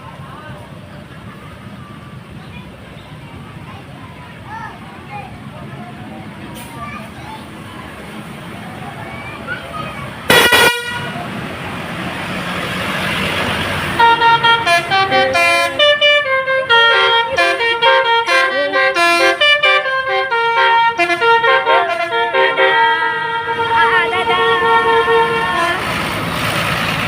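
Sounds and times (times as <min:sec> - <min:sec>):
multi-tone horn melody: 0:10.3 - 0:11.2, 0:13.8 - 0:26.3
bus horn blast: 0:10.3 - 0:11.4, 0:13.8 - 0:26.4.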